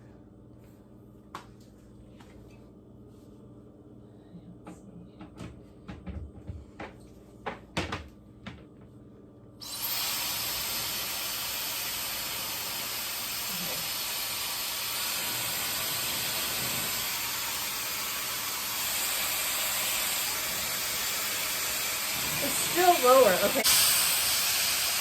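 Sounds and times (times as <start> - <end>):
hair dryer blowing: 9.6 - 25.0.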